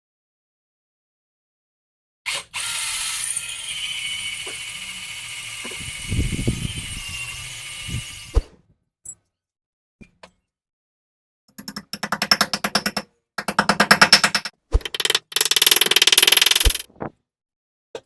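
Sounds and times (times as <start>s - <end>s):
sharp click: 14.4s - 16.9s.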